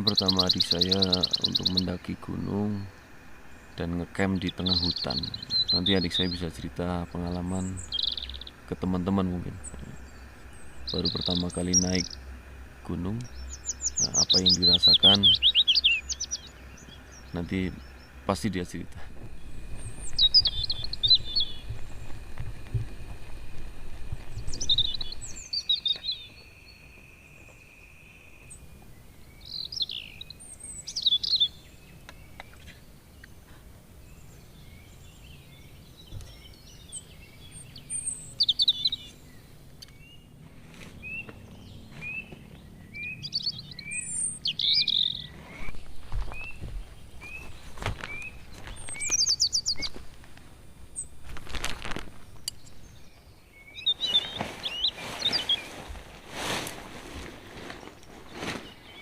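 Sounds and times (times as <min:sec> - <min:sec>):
birds singing: 0:00.0 - 0:59.0
short repeated bird chirps: 0:07.8 - 0:08.6, 0:13.3 - 0:18.2.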